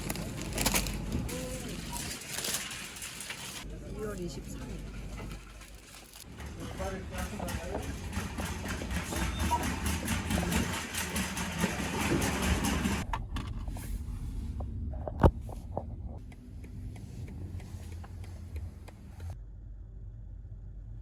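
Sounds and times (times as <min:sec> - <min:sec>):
low vehicle rumble: 0:00.0 - 0:21.0.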